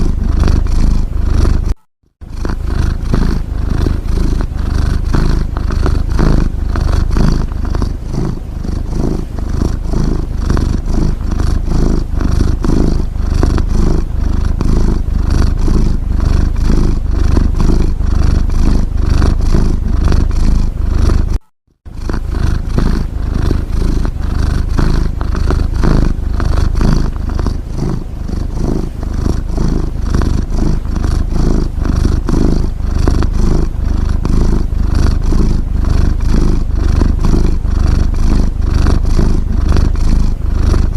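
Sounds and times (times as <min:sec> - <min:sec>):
cat purring: 0:00.0 - 0:40.9.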